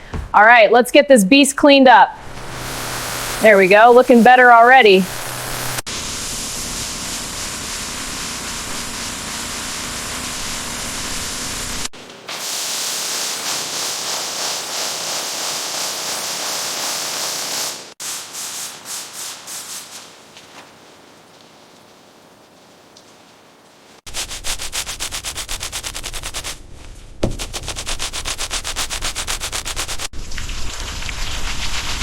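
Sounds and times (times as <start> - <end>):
hissing abrasive rubbing: 2.2 - 11.9, 24.1 - 26.6, 27.2 - 30.1
short scrubbing strokes: 24.1 - 26.6, 27.2 - 30.1.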